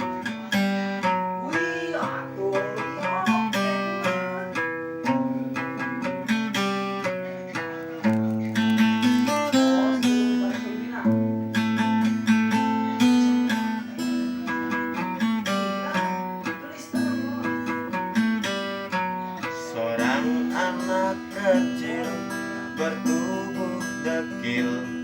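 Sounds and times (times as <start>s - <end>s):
acoustic guitar playing: 0.0s - 25.0s.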